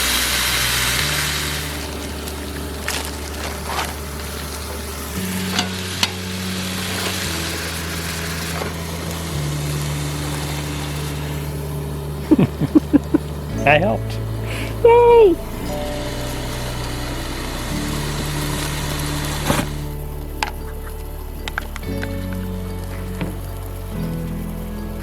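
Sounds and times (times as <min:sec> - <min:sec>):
food sizzling in a frying pan: 0:00.0 - 0:11.6.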